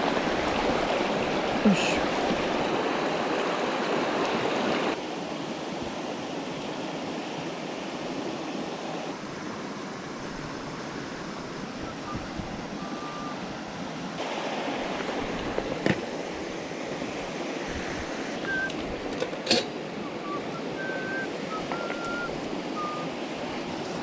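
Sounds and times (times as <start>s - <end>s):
mountain stream rushing: 0.0s - 24.0s
short high whistles: 20.2s - 23.1s.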